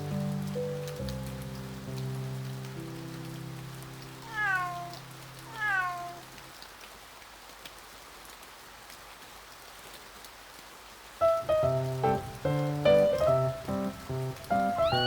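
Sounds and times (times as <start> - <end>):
soft steady hiss: 0.0 - 15.0
kitten meowing: 4.2 - 6.2, 14.6 - 15.0.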